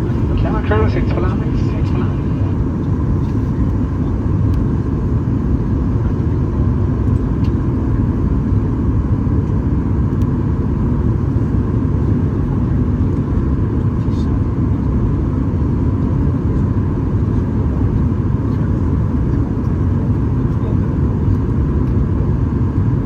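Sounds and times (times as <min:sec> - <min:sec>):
faint steady whine: 0:00.0 - 0:08.4
airplane cabin rumble: 0:00.0 - 0:23.0.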